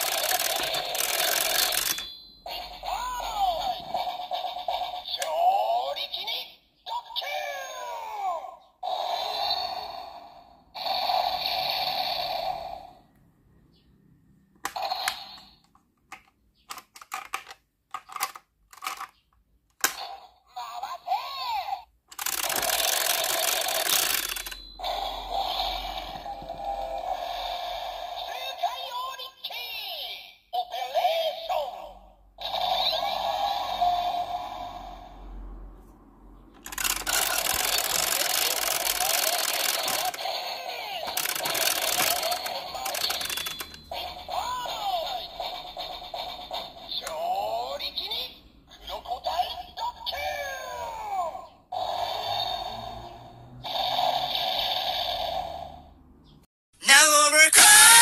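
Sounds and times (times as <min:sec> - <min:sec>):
plastic toy gun clicks: 0:00.0 - 0:02.0, 0:16.1 - 0:20.0, 0:22.1 - 0:24.5, 0:36.6 - 0:40.3, 0:41.1 - 0:43.8
toy electronic sound effects: 0:00.0 - 0:13.0, 0:14.6 - 0:17.1, 0:19.8 - 0:35.3, 0:36.6 - 0:55.9, 0:56.8 - 0:58.0.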